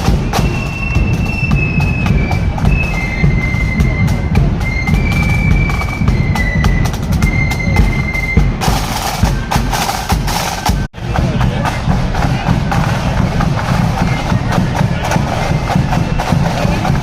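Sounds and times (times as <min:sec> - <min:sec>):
bass drum and snare: 0:00.0 - 0:17.0
flute band melody: 0:00.0 - 0:17.0.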